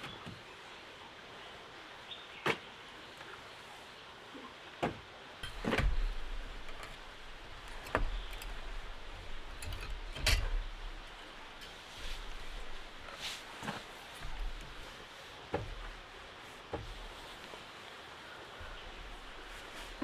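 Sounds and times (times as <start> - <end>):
steady rain hiss: 0.4 - 20.0
handling noises: 5.4 - 17.6.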